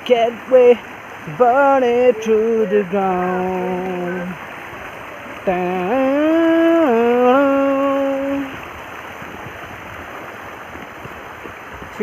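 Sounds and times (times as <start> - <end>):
man singing long notes: 0.0 - 4.5, 5.4 - 8.6
river rushing: 0.0 - 12.0.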